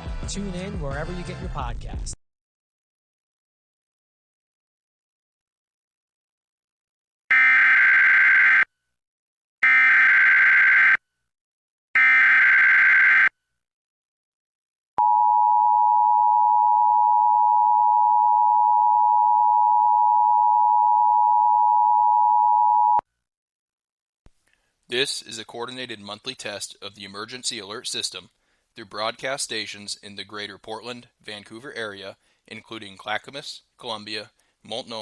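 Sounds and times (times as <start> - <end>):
two-tone attention signal: 15.0 - 23.0.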